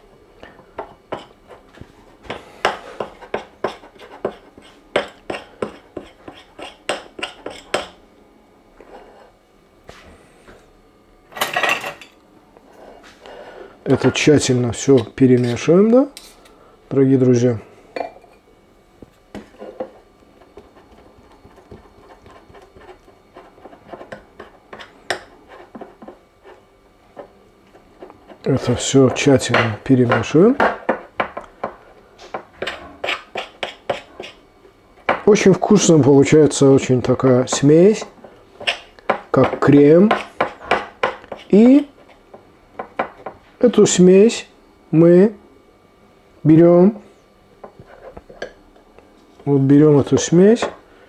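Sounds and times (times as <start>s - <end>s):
spoon scraping paste in dish: 2.7s - 7.9s, 32.6s - 34.4s.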